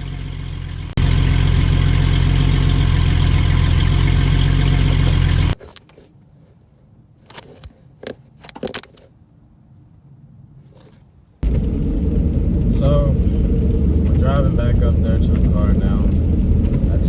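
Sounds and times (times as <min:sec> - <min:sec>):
car engine exhaust note: 0:00.0 - 0:05.6, 0:11.4 - 0:17.0.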